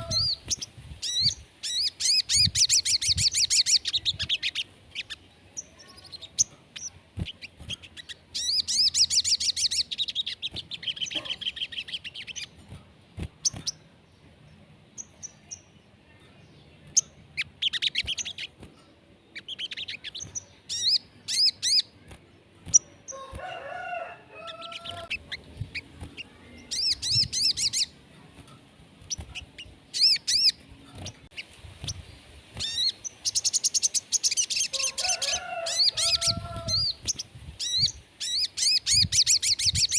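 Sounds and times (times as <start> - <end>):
bird singing high trills: 24.4 - 28.0.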